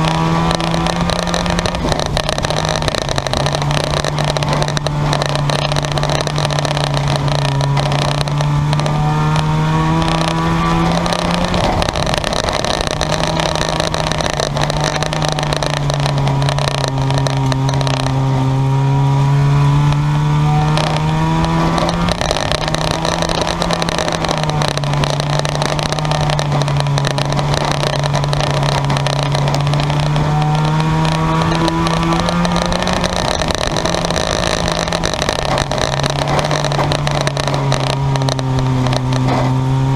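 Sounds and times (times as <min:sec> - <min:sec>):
cars passing by: 0:00.0 - 0:39.9
race car engines droning: 0:00.0 - 0:39.9.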